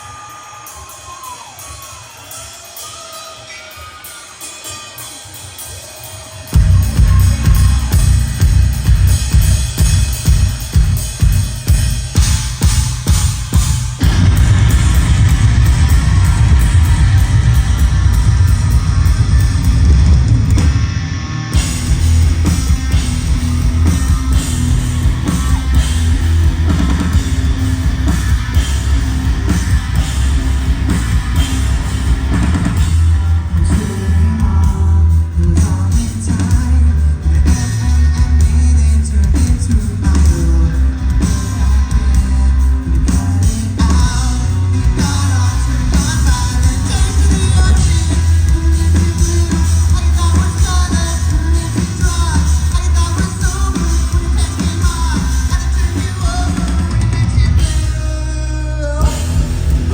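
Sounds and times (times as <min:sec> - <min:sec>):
person singing: 0:00.0 - 0:09.4, 0:32.4 - 0:59.9
live rock band playing: 0:00.0 - 0:59.9.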